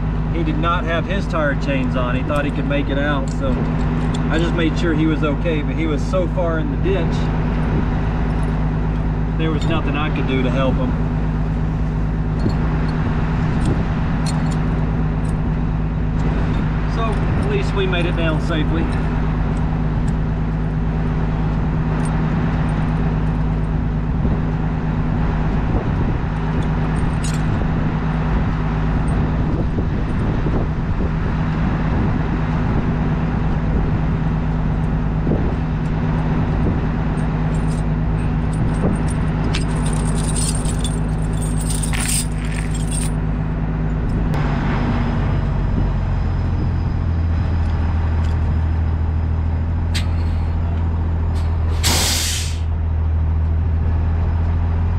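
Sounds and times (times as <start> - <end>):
pickup truck engine: 0.0 - 54.9
road noise: 0.0 - 54.9
jingling rattle: 0.8 - 6.4, 9.4 - 10.9, 12.2 - 20.8, 26.3 - 27.7, 37.0 - 43.3.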